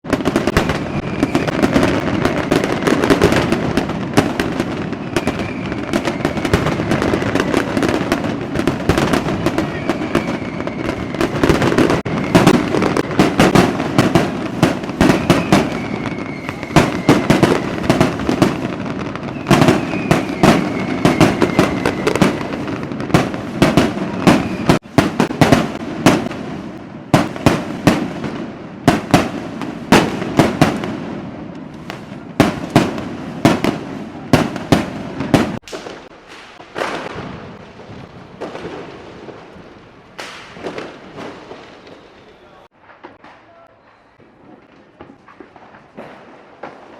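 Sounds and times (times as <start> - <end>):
fireworks cracks and bangs: 0.0 - 46.9
faint high firework whistles: 0.3 - 3.5, 4.3 - 13.6, 14.6 - 23.0, 23.6 - 25.2, 40.2 - 45.1.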